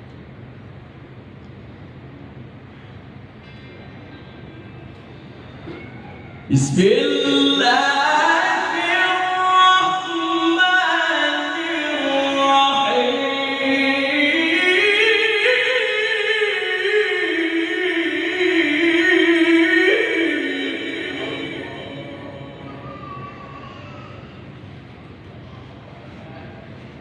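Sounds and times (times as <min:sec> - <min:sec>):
man reciting melodically: 0:06.5 - 0:23.2.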